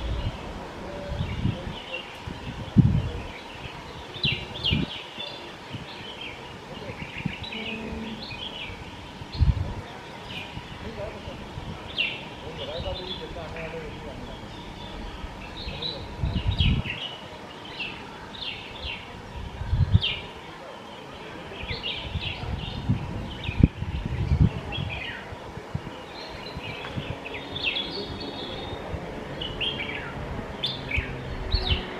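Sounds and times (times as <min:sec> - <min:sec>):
dull low thumps: 0:00.0 - 0:01.7
bird chirping and warbling: 0:00.0 - 0:20.4, 0:25.9 - 0:31.9.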